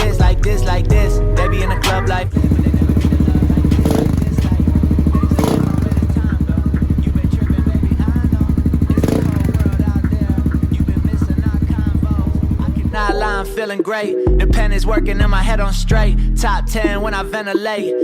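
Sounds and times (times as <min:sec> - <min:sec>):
dirt bike engine running: 0:02.1 - 0:13.3.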